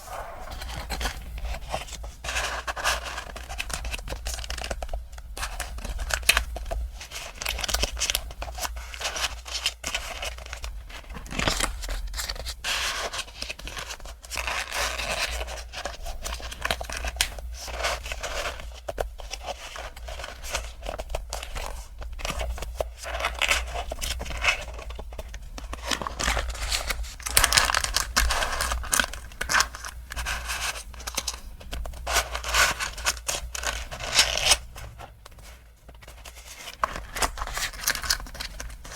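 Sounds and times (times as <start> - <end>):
packaging rustling and tearing: 0.0 - 38.9.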